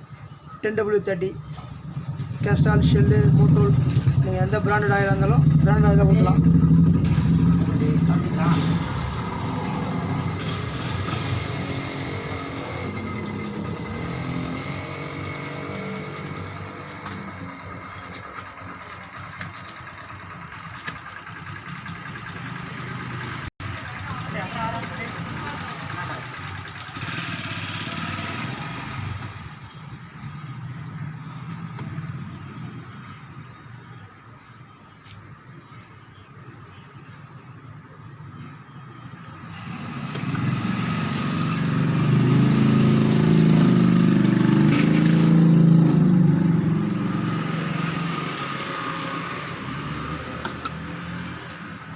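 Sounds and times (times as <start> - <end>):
engine idling: 1.6 - 15.0, 16.0 - 27.7.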